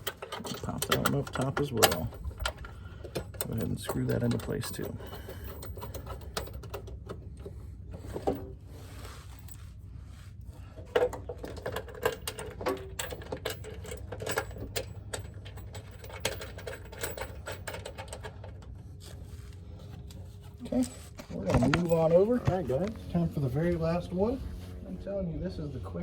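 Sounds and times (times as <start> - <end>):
metallic clicks of bolts threading: 0.0 - 7.0.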